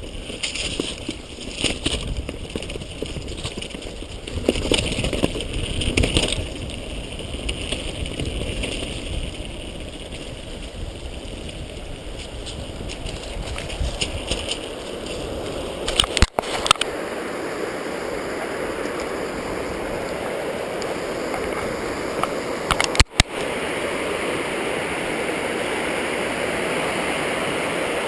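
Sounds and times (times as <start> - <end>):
waterfall rushing water: 16.2 - 28.0.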